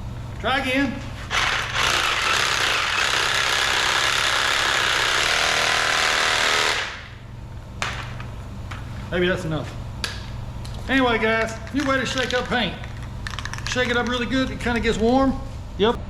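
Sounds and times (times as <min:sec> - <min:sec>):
reciprocating saw running: 0:01.3 - 0:07.0
spray paint can rattling: 0:11.7 - 0:14.3.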